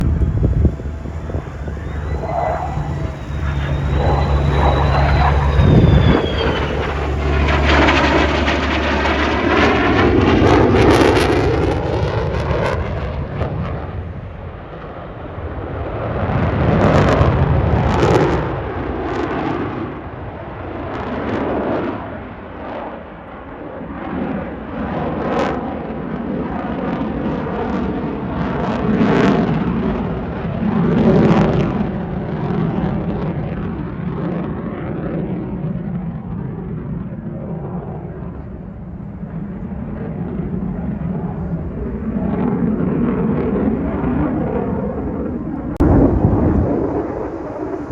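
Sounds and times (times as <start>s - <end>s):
jet engine roar: 0.0s - 12.5s.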